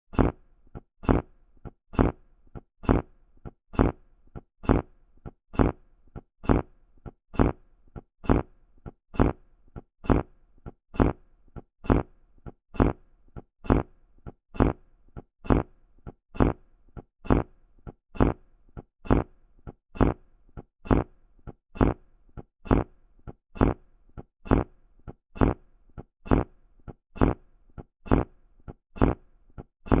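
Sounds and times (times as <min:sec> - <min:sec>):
low buzzy fart: 0:00.1 - 0:02.2, 0:02.8 - 0:03.2, 0:03.8 - 0:05.0, 0:05.6 - 0:06.8, 0:07.4 - 0:08.6, 0:09.2 - 0:10.3, 0:11.0 - 0:12.1, 0:12.8 - 0:13.9, 0:14.6 - 0:15.7, 0:16.4 - 0:17.5, 0:18.2 - 0:18.5, 0:19.1 - 0:19.3, 0:20.0 - 0:20.3, 0:20.9 - 0:21.2, 0:21.8 - 0:22.1, 0:22.7 - 0:23.0, 0:23.6 - 0:23.8, 0:24.5 - 0:24.8, 0:25.4 - 0:25.6, 0:26.3 - 0:26.6, 0:27.2 - 0:27.4, 0:28.1 - 0:28.4, 0:29.0 - 0:29.2.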